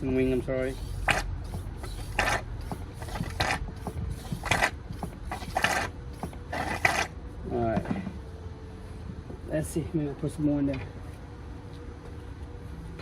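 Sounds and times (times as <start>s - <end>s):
hand pump rasping strokes: 0.3s - 7.1s.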